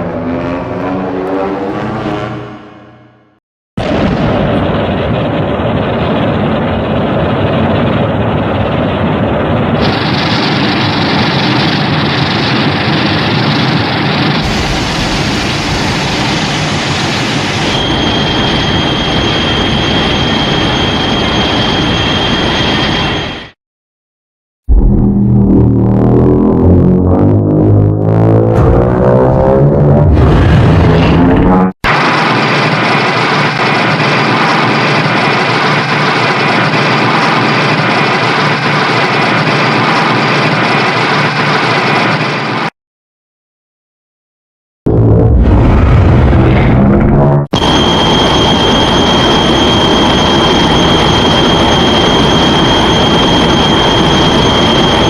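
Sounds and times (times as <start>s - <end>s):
steady high whine: 0.0s - 23.6s, 45.0s - 55.0s
harsh rushing screech: 14.4s - 23.6s, 28.4s - 33.5s, 44.9s - 55.0s.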